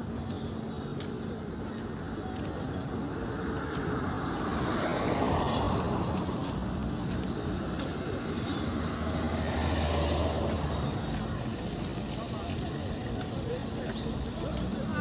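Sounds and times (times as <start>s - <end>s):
vehicle engines: 0.0s - 15.0s.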